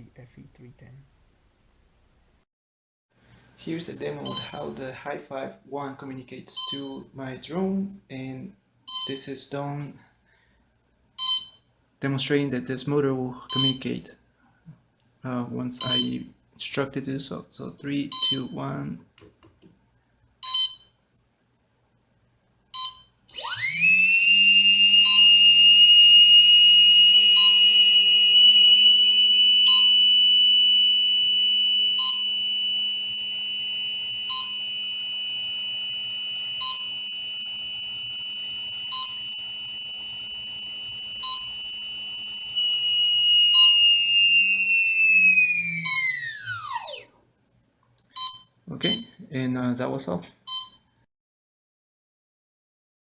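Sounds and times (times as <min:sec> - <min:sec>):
short electronic beeps: 0:04.2 - 0:04.7, 0:06.6 - 0:07.1, 0:08.9 - 0:09.2, 0:11.2 - 0:11.6, 0:13.5 - 0:13.9, 0:15.8 - 0:16.3, 0:18.2 - 0:18.6, 0:20.4 - 0:20.9, 0:22.8 - 0:47.0, 0:48.1 - 0:49.2, 0:50.5 - 0:50.9
drone motor whining: 0:23.3 - 0:47.1.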